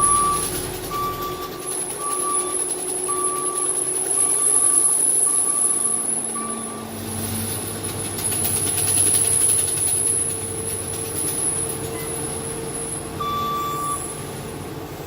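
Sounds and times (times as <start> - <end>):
backup alarm beeping: 0.0 - 7.1, 12.0 - 14.5
skid steer engine running: 0.0 - 15.0.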